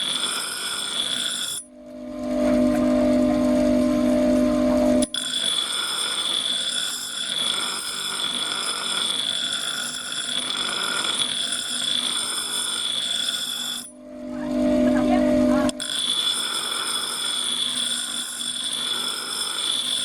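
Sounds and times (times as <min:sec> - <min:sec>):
power tool whining: 0:00.0 - 0:20.0.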